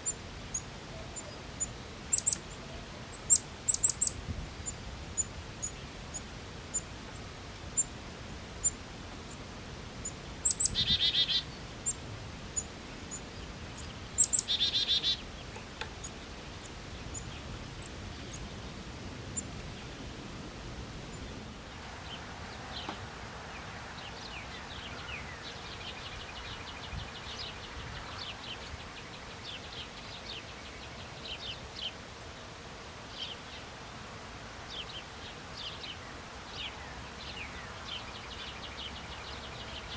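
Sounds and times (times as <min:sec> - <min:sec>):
songbirds singing: 0:00.0 - 0:20.2, 0:20.9 - 0:39.9
buzzy bird trill: 0:02.1 - 0:02.4, 0:03.2 - 0:06.9.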